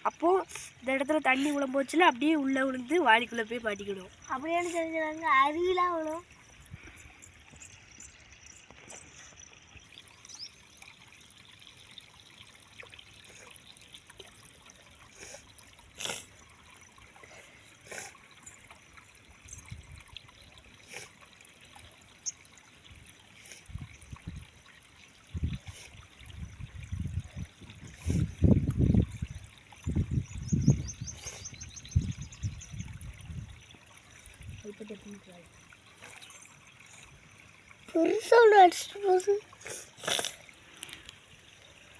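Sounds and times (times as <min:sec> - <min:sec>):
stream water trickling: 0:00.0 - 0:41.9.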